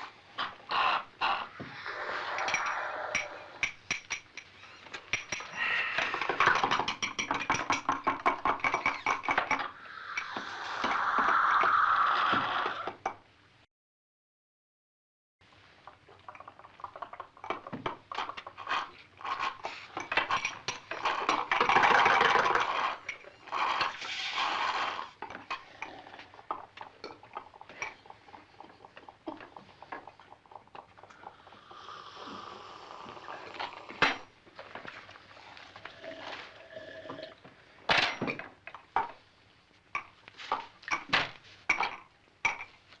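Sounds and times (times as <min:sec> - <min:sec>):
slurping through a straw: 0:00.0 - 0:03.6, 0:09.6 - 0:13.0, 0:20.9 - 0:34.0, 0:34.6 - 0:37.4.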